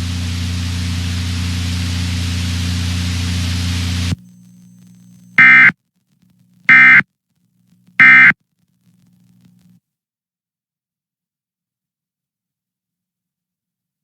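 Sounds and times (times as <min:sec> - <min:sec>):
static hiss: 0:00.0 - 0:07.0, 0:07.6 - 0:09.8
short bursts of data tones: 0:05.4 - 0:05.7, 0:06.7 - 0:07.0, 0:08.0 - 0:08.4.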